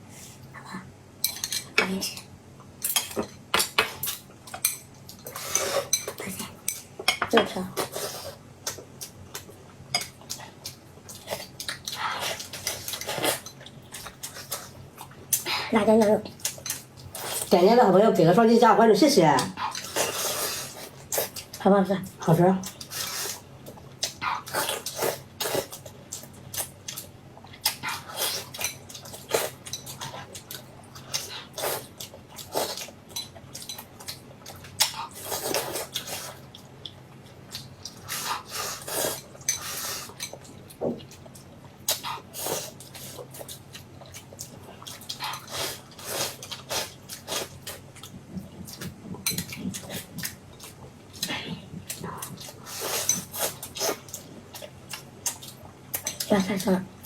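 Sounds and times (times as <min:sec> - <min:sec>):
person chewing and smacking: 0:08.6 - 0:15.5, 0:23.7 - 0:56.3.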